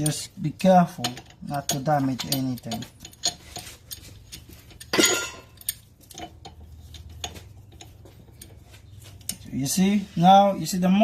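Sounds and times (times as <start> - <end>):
metallic clicks of brake tool: 0.0 - 8.6.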